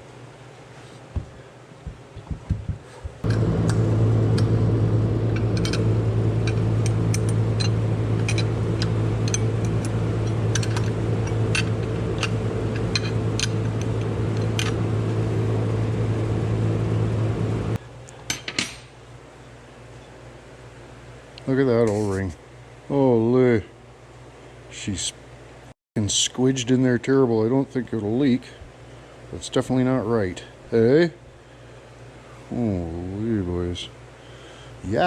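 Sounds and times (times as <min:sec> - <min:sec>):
knocks: 0:01.2 - 0:03.2
electric machine humming: 0:01.9 - 0:17.8.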